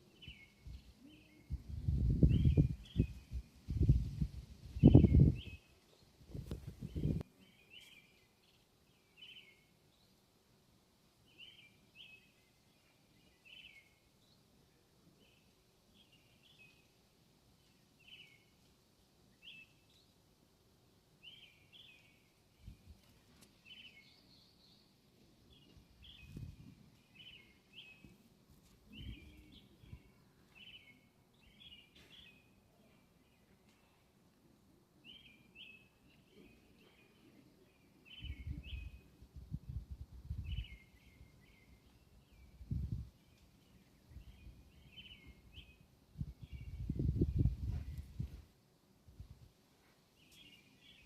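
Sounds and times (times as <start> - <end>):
outdoor background noise: 0.0 - 51.0
bird chirping: 4.8 - 10.2, 11.3 - 14.4, 21.2 - 28.2, 28.9 - 34.0, 35.0 - 48.2.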